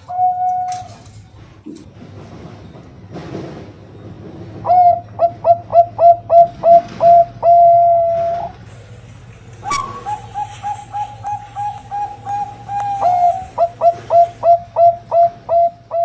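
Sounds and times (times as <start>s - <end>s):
dove cooing: 4.7s - 16.0s.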